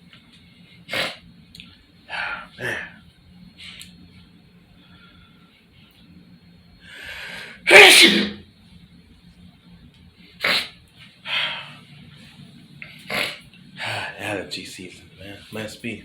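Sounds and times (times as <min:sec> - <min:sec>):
man sneezing: 0:02.1 - 0:03.0, 0:07.6 - 0:08.4
breathy sounds: 0:13.3 - 0:14.2.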